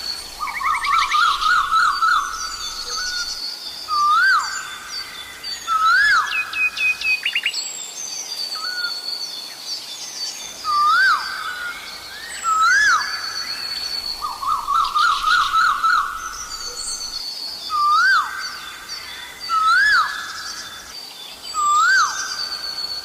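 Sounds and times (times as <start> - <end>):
small birds chirping: 0.0 - 23.0.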